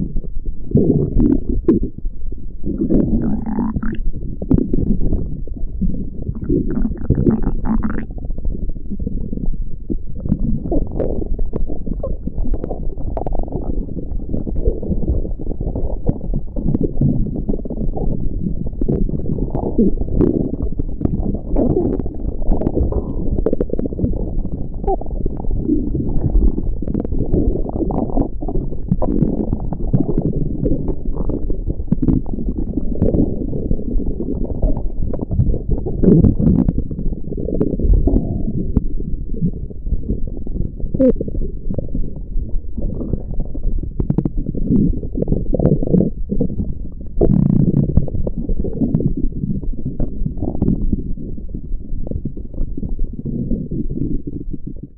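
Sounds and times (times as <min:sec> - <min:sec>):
stomach growling and gurgling: 0:00.0 - 0:54.9.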